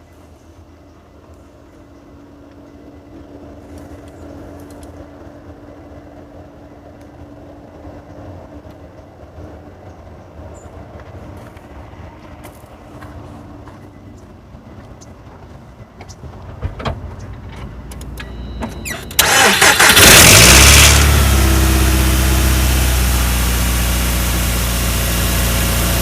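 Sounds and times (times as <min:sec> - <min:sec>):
car engine cranking and idling: 0:15.4 - 0:26.0.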